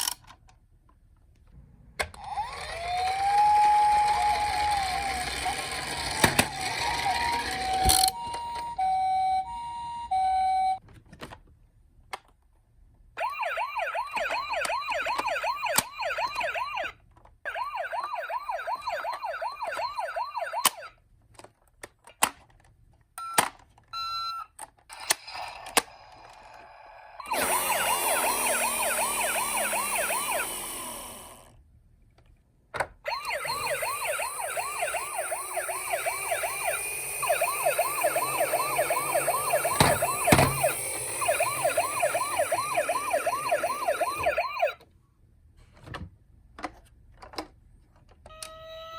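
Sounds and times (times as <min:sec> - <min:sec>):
toy sirens: 0:02.2 - 0:10.8, 0:13.2 - 0:21.0, 0:23.2 - 0:31.5, 0:33.0 - 0:44.8, 0:48.2 - 0:48.9.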